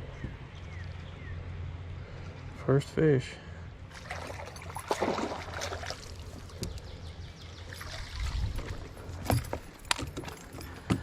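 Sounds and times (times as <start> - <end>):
low rumble of handling noise: 0.0 - 11.0
water splashing and dribbling: 3.9 - 11.0.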